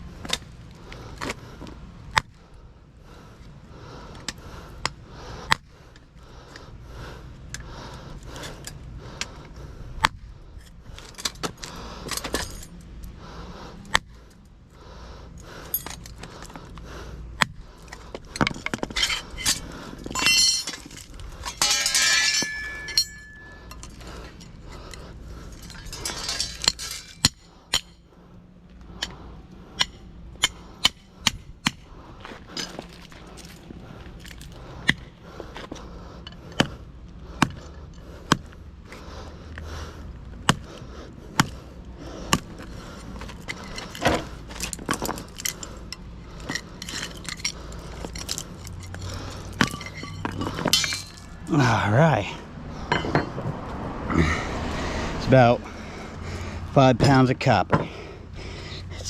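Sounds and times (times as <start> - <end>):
metal clinks and knocks: 10.6 - 13.2, 15.6 - 16.6, 17.8 - 28.1, 42.6 - 51.5, 52.8 - 53.6
metal clattering and scraping: 17.9 - 28.0, 42.3 - 53.6.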